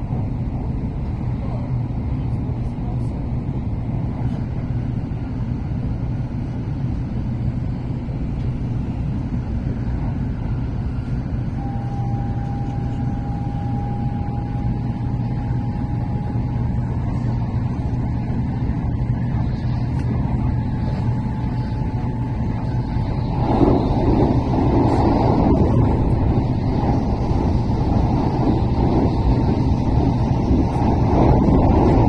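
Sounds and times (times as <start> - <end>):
train rumble and hum: 0.0 - 32.0
thin rising whine: 11.6 - 32.0.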